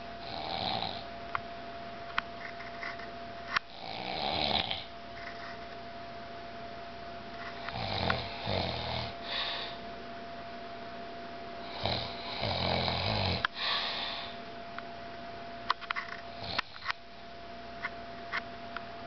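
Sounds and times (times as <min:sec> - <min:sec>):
person snoring: 0:00.2 - 0:01.1, 0:03.7 - 0:04.9, 0:07.6 - 0:09.8, 0:11.6 - 0:14.4, 0:16.4 - 0:16.8.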